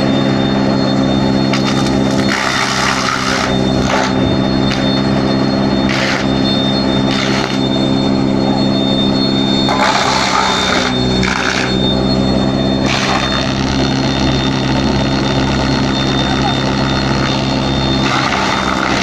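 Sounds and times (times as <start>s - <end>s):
wood chipper motor hum: 0.0s - 19.0s
wood being crushed: 1.5s - 6.4s, 7.0s - 7.7s, 9.6s - 11.8s, 12.8s - 14.1s, 15.8s - 19.0s.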